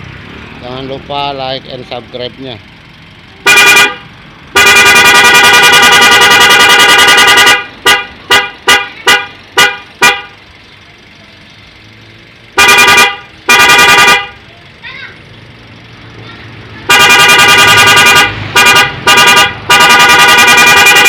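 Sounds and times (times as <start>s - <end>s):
electric car horn: 3.4s - 10.4s, 12.6s - 14.4s, 16.8s - 21.0s.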